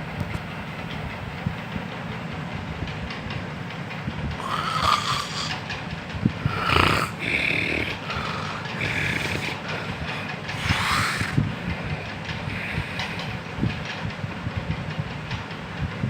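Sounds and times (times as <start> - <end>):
person snoring: 4.4 - 5.6, 6.4 - 13.4.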